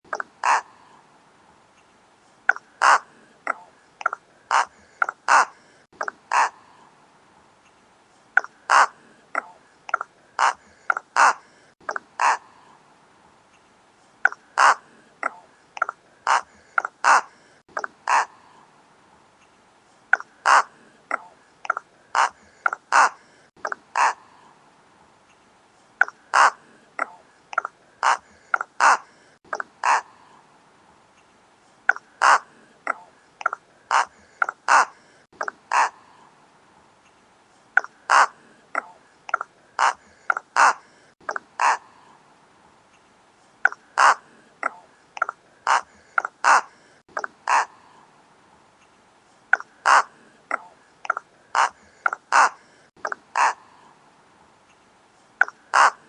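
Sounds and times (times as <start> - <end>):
rook cawing: 0.4 - 0.7, 2.8 - 3.1, 4.5 - 5.6, 6.3 - 6.6, 8.7 - 9.0, 10.4 - 11.4, 12.2 - 12.4, 14.6 - 14.8, 16.2 - 17.3, 18.0 - 18.3, 20.4 - 20.7, 22.1 - 23.2, 23.9 - 24.2, 26.3 - 26.6, 28.0 - 29.1, 29.8 - 30.1, 32.2 - 32.5, 33.9 - 35.0, 38.1 - 38.3, 39.8 - 40.8, 44.0 - 44.2, 45.6 - 46.7, 47.4 - 47.7, 49.8 - 50.1, 51.5 - 52.6, 53.3 - 53.6, 55.7 - 56.0.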